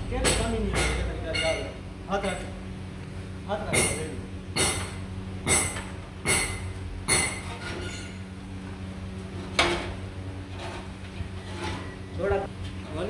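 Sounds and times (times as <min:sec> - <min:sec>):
metal-on-metal strikes ringing: 0:00.0 - 0:02.5, 0:03.7 - 0:07.6
low hum: 0:00.0 - 0:03.4.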